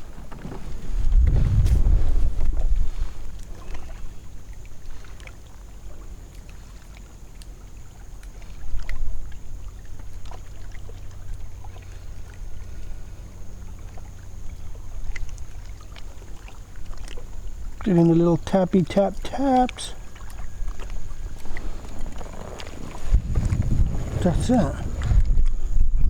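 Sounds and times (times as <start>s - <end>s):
wind rumble on microphone: 0.0s - 5.1s, 19.2s - 26.0s
water lapping against kayak hull: 0.0s - 26.0s
small ticks and splashes: 2.4s - 25.9s.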